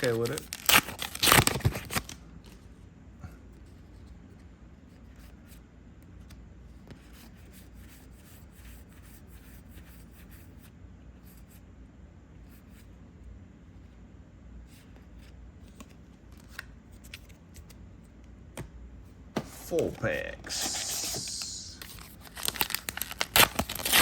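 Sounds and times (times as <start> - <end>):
cards rustling: 0.0 - 2.7, 14.8 - 18.2, 19.4 - 24.0.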